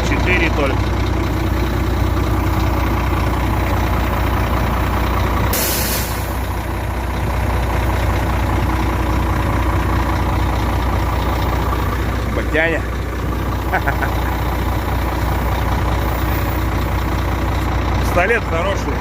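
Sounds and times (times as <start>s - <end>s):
truck engine idling: 0.0s - 19.0s
compressed air hiss: 5.5s - 6.4s.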